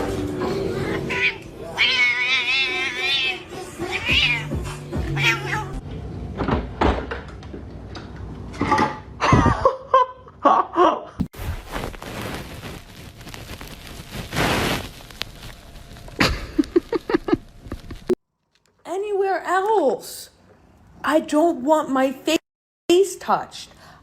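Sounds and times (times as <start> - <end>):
cat meowing and yowling: 1.0 - 5.8.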